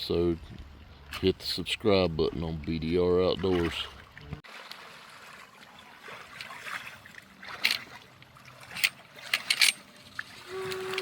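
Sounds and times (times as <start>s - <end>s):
water sloshing and lapping: 0.4s - 11.0s
sharp water splashes: 3.2s - 11.0s.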